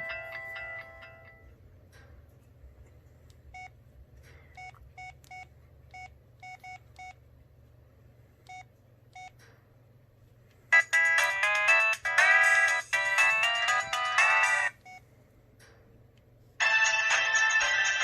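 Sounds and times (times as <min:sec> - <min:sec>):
melodic phone ringtone: 0:00.0 - 0:01.5, 0:10.7 - 0:15.0, 0:16.6 - 0:18.0.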